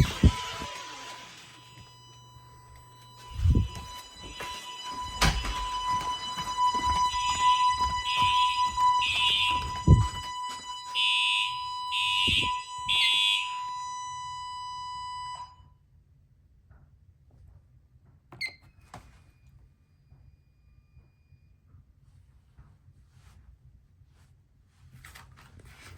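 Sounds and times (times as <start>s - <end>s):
high-pitched pulsing alarm: 0.0s - 15.6s
fire alarm steady tone: 0.0s - 15.8s.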